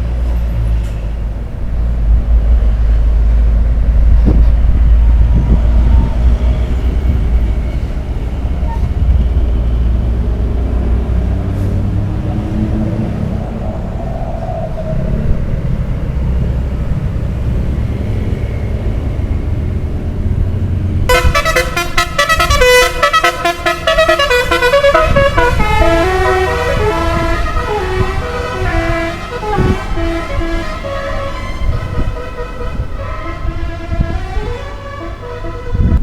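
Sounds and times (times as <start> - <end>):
vehicle rumble: 0.0 - 36.0
musical air horns playing tune: 21.1 - 36.0.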